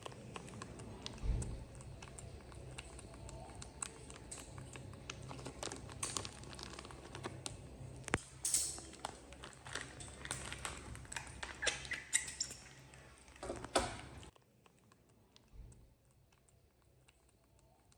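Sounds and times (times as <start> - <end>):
light clicks and crinkling: 0.0 - 17.9.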